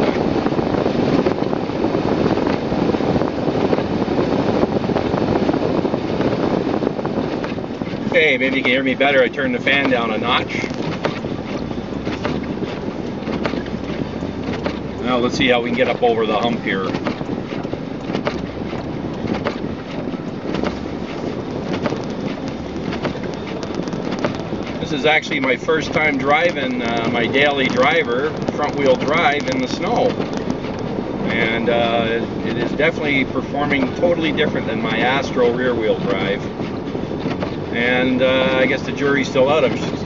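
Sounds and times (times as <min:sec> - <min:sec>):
car engine and road noise: 0:00.0 - 0:40.0
heater fan blowing: 0:00.0 - 0:40.0
short knocks and ticks: 0:07.3 - 0:37.7.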